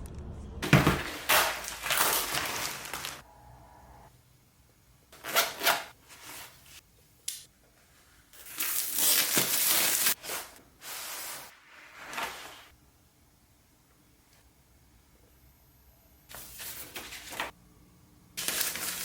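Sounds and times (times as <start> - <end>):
packaging rustling and crinkling: 0.6 - 3.2, 8.4 - 12.7, 18.4 - 19.0.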